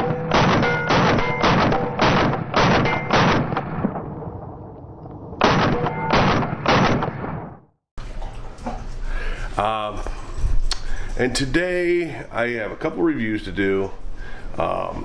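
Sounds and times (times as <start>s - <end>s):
gunshots with ringing tail: 0.0s - 7.7s.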